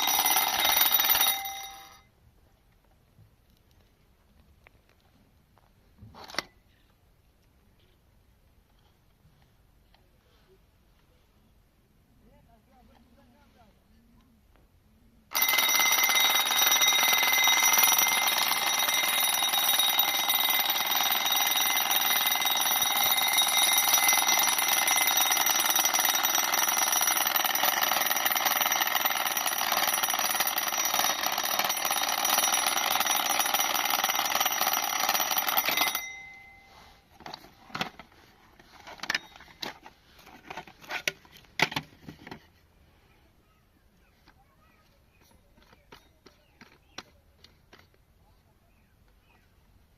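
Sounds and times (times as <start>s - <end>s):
alarm clock bell ringing: 0.0s - 2.1s, 15.3s - 37.0s.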